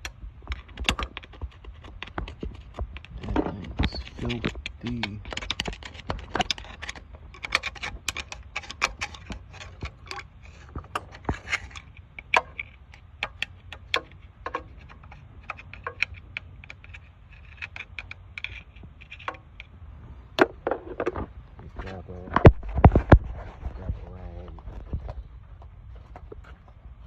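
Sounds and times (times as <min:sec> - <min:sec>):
tool scraping: 0:00.5 - 0:22.0.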